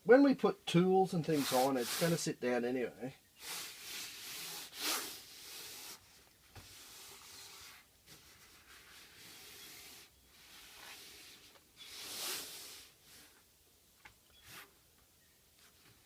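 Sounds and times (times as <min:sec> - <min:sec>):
foam sheet rubbing and scraping: 0:01.2 - 0:02.3, 0:03.4 - 0:13.4.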